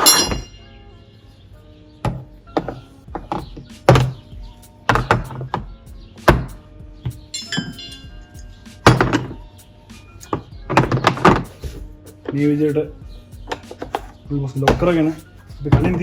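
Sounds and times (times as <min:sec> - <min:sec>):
tools clunking into tool box: 0:00.0 - 0:00.5, 0:07.4 - 0:08.1
background music: 0:00.0 - 0:16.0.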